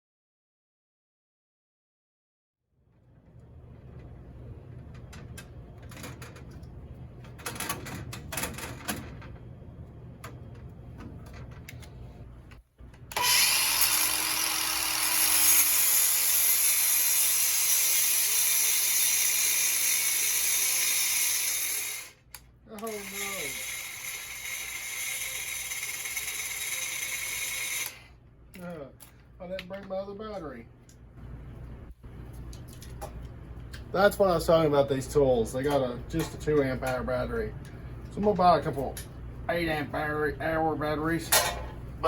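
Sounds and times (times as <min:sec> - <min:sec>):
cordless power tool running: 0:13.0 - 0:28.1.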